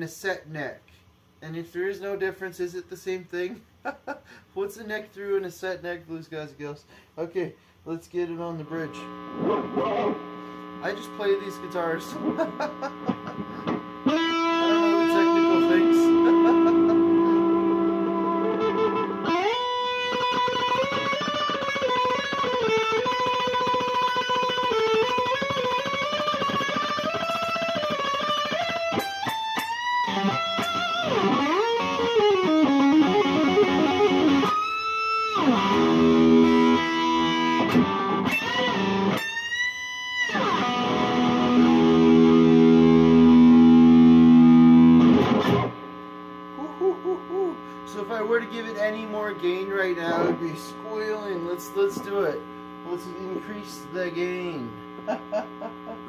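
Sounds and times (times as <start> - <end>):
electric guitar lead and chords: 9.1 - 47.9, 49.8 - 51.3.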